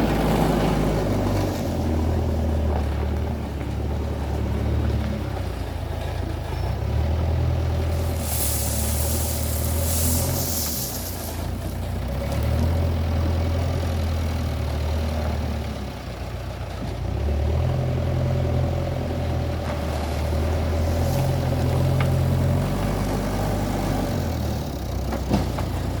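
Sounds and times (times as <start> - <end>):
backhoe diesel engine running: 0.0 - 26.0
loud hiss: 7.9 - 11.8.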